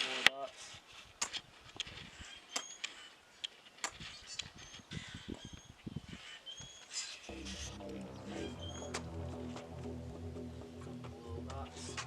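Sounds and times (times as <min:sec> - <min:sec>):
soft low bumps: 0:07.3 - 0:12.0.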